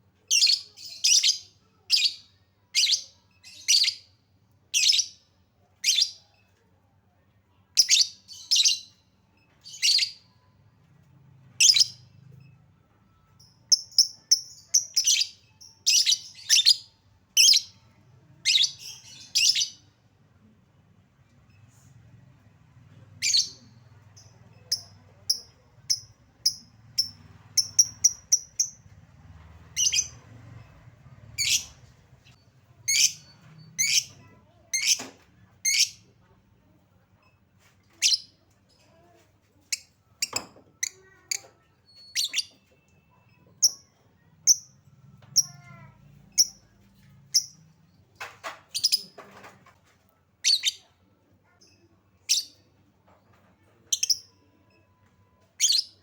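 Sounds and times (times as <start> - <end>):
lovebird chirping: 23.2 - 28.9, 31.3 - 35.0.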